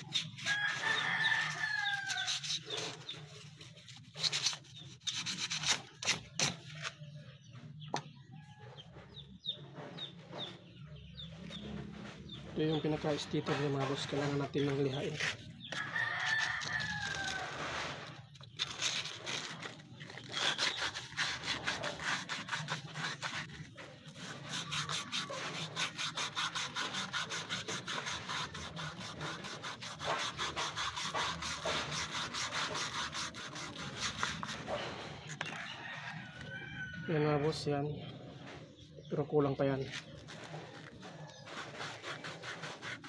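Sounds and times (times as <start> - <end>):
sandpaper rubbing on metal: 0.0 - 6.9, 13.0 - 35.6, 39.9 - 43.0.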